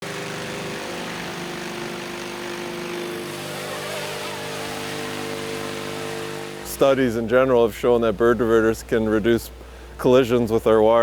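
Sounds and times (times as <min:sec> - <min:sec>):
drone propellers humming: 0:00.0 - 0:08.8.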